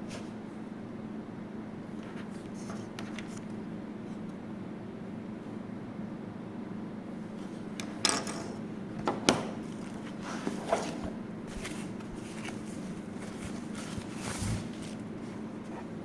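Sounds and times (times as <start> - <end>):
steady low hum: 0.0 - 16.0
cardboard and plastic packaging rustling: 9.6 - 16.0.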